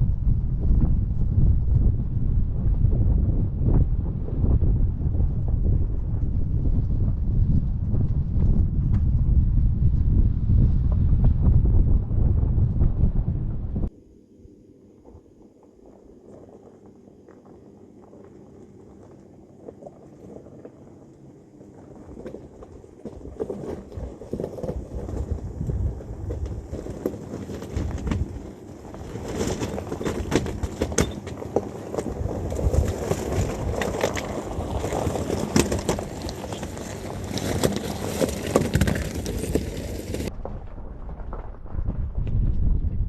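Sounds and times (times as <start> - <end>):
tyres crunching over gravel: 15.1 - 42.3.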